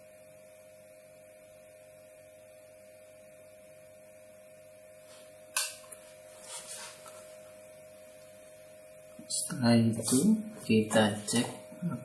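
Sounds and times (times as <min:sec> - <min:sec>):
steady electrical hum: 0:00.0 - 0:12.0
handling noises of bench work: 0:05.1 - 0:07.6
sharp click: 0:05.6 - 0:05.8.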